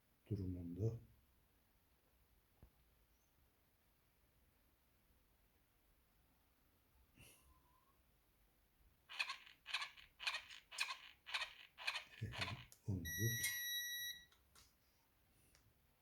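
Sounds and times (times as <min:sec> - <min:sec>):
small motor buzzing and whining: 0:09.1 - 0:12.7.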